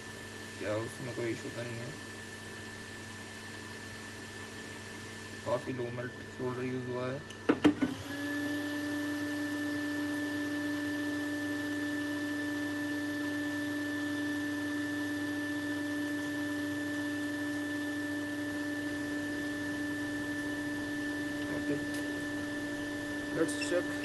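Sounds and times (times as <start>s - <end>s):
hot air rework station blowing: 6.4s - 24.0s.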